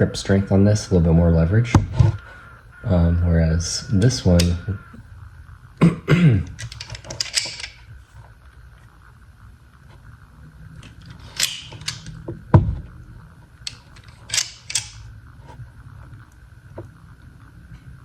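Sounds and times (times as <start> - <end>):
pliers clicking and rattling: 6.5 - 7.8, 10.8 - 12.2, 13.6 - 15.1.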